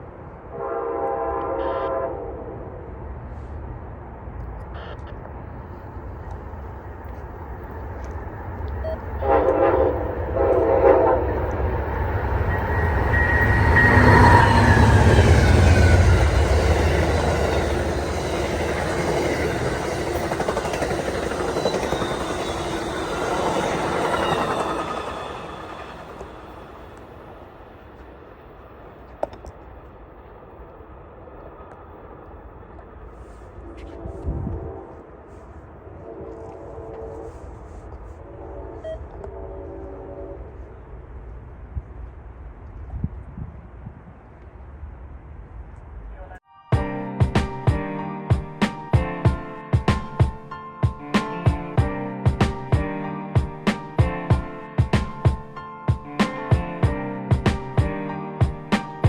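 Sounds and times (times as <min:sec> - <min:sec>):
passenger train passing: 0:00.0 - 0:59.0
train horn blasts: 0:00.5 - 0:02.8, 0:09.2 - 0:20.4, 0:33.2 - 0:40.8.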